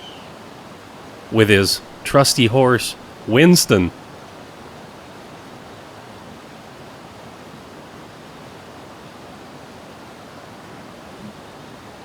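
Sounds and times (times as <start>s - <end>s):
waterfall rushing: 1.3s - 3.9s.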